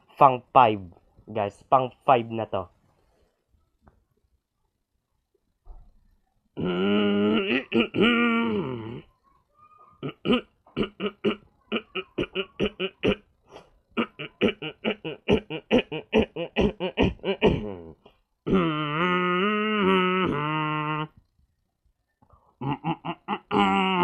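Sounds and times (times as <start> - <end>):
boy making laugh-like vocal sounds: 6.6 - 9.1, 10.0 - 13.2, 14.0 - 21.2, 22.6 - 24.0.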